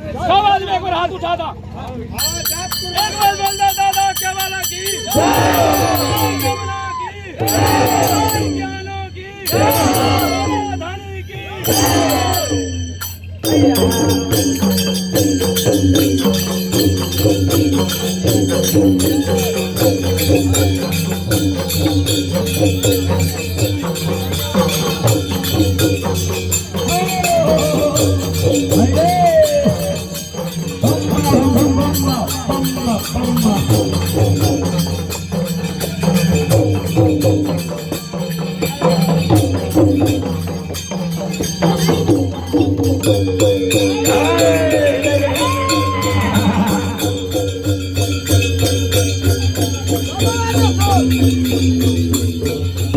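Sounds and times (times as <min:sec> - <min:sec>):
jingling rattling percussion: 0:00.0 - 0:52.9
person singing or chanting: 0:05.1 - 0:06.7, 0:07.4 - 0:08.6, 0:09.4 - 0:10.8, 0:11.6 - 0:12.7, 0:26.8 - 0:34.7, 0:42.8 - 0:47.5, 0:50.5 - 0:52.9.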